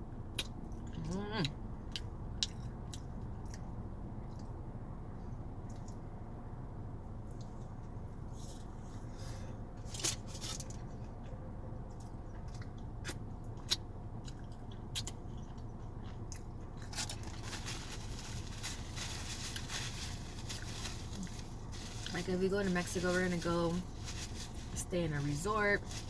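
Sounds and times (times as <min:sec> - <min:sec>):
low background hum: 0:00.0 - 0:26.0
person chewing: 0:00.3 - 0:04.5, 0:10.7 - 0:17.4.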